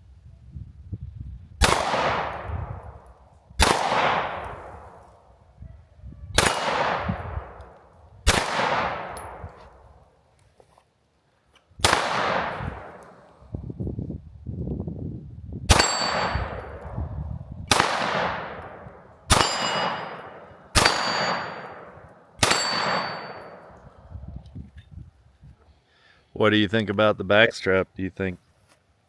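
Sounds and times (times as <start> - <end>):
pistol shots: 1.6 - 5.1, 6.4 - 9.8, 11.8 - 13.3, 15.7 - 17.0, 17.7 - 23.9
steel target ringing clang: 15.7 - 16.8, 19.3 - 23.8.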